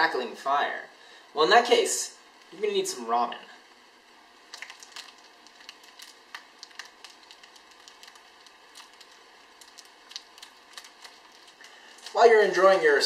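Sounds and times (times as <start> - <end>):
crackling fire foley: 3.6 - 13.0.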